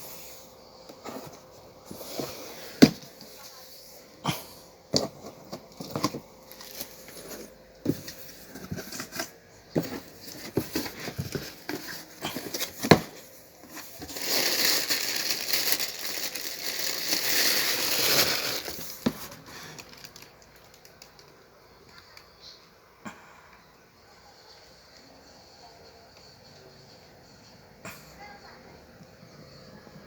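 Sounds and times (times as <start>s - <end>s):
packaging being handled: 5.0s - 21.4s
wrapping crinkling: 5.6s - 21.5s.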